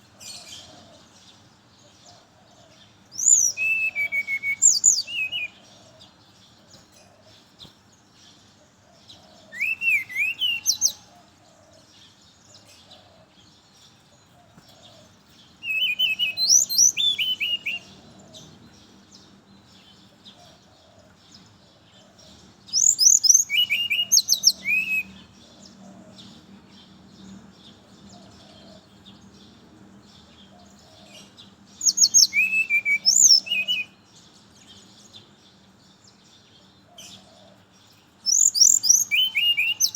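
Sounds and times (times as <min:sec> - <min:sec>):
bird singing whistled notes: 0:03.1 - 0:05.6, 0:09.5 - 0:11.1, 0:15.6 - 0:18.0, 0:22.7 - 0:25.4, 0:31.8 - 0:34.1, 0:38.2 - 0:39.9.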